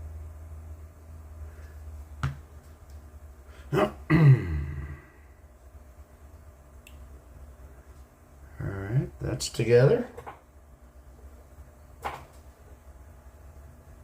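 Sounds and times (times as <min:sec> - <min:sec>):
low steady hum: 0:00.0 - 0:14.0
man coughing: 0:03.7 - 0:05.1.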